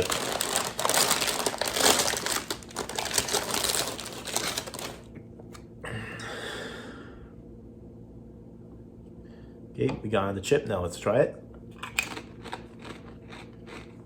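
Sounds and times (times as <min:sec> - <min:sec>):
snack bag rustling: 0:00.0 - 0:05.1.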